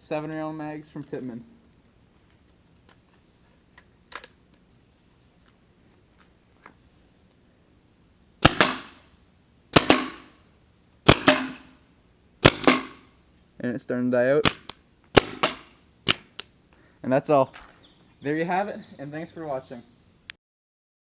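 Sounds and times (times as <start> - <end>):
paintball pistol shots: 8.4 - 9.1, 9.7 - 10.4, 11.0 - 11.8, 12.4 - 13.2, 14.4 - 16.4.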